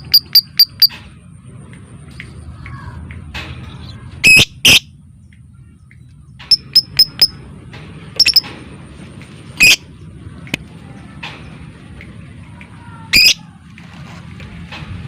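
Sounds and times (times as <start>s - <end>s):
bird chirping shrilly: 4.2s - 4.9s, 9.6s - 9.9s, 13.1s - 13.4s.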